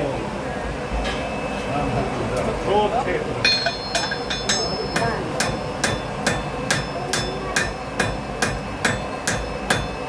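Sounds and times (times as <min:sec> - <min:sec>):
hammer striking iron on anvil: 0:03.4 - 0:10.0.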